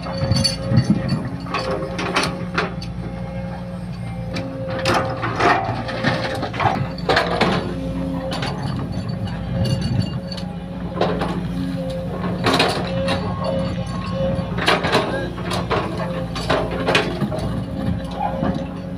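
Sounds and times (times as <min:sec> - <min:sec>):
excavator diesel engine running: 0:00.0 - 0:18.9
metallic clanks and scrapes: 0:00.0 - 0:18.9.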